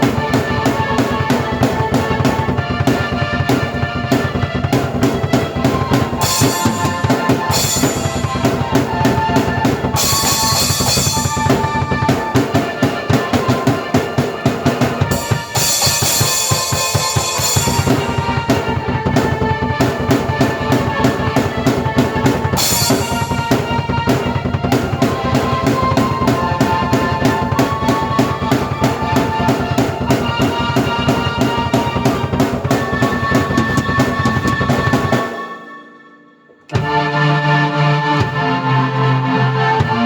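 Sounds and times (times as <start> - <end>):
drum kit rhythm: 0.0 - 35.7, 36.5 - 37.2, 38.2 - 38.7, 39.8 - 40.0
keyboard chords: 0.0 - 40.0
cymbal crashes: 6.2 - 8.9, 9.9 - 11.9, 15.1 - 18.5.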